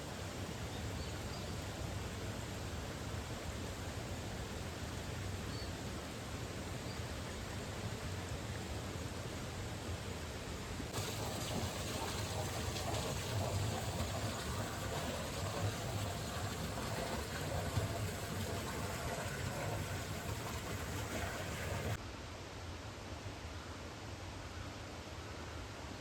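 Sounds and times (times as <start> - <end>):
stream water rushing: 0.0 - 22.0.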